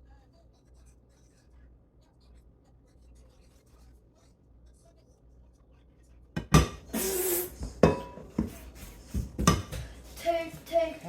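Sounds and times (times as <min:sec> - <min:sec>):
kitchenware knocks: 0:07.6 - 0:09.9.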